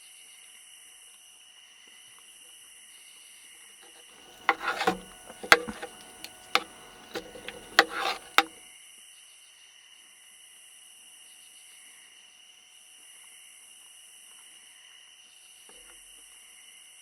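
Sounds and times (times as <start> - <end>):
cutlery clinking on a dish: 4.2 - 8.6.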